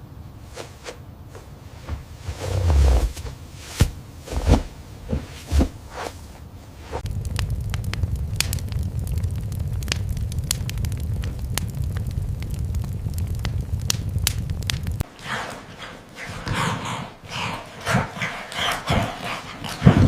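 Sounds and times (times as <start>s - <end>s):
low rumble: 1.6s - 15.0s
wood fire crackling: 1.6s - 15.2s.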